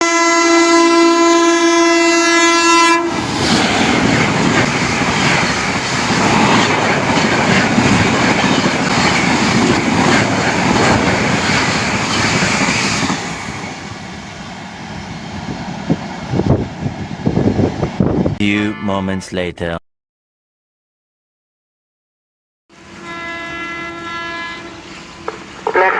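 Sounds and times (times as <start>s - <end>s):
train horn blast: 0.0s - 3.2s, 18.4s - 19.2s, 22.8s - 24.9s, 25.6s - 25.9s
train coaches rushing and clattering: 2.4s - 18.4s, 22.8s - 25.9s.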